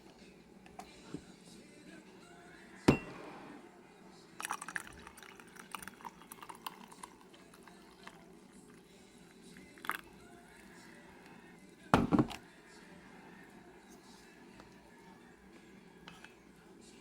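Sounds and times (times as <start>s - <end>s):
liquid pouring and dripping: 4.4s - 8.2s.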